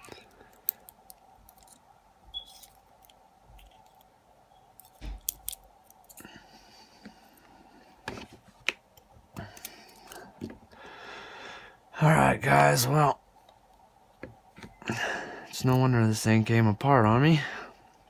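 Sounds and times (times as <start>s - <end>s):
small metal lock parts clicking: 4.7s - 6.2s.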